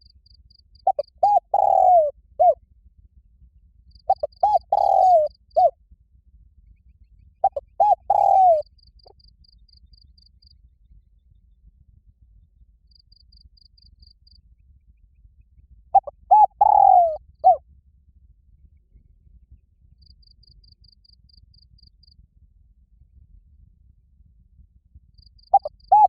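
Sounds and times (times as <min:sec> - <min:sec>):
faint insect trill: 0:00.0 - 0:02.6, 0:03.8 - 0:05.8, 0:07.4 - 0:10.7, 0:12.8 - 0:14.4, 0:20.0 - 0:22.2, 0:25.1 - 0:26.0
dove cooing: 0:00.9 - 0:02.6, 0:04.1 - 0:05.7, 0:07.4 - 0:08.7, 0:16.0 - 0:17.6, 0:25.5 - 0:26.0.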